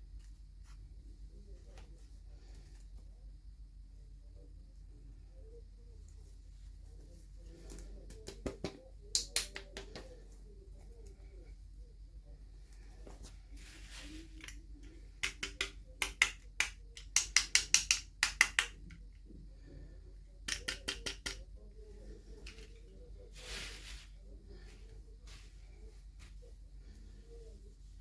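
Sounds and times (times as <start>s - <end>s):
plastic pieces clicking and tapping: 14.4s - 19.0s, 20.4s - 21.5s
rustling swish: 23.3s - 24.2s.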